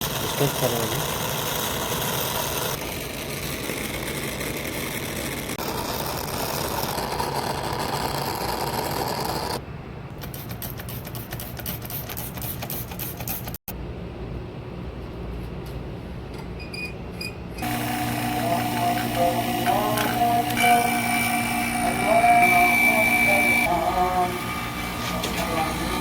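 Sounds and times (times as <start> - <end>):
air conditioner humming: 13.7 - 26.0.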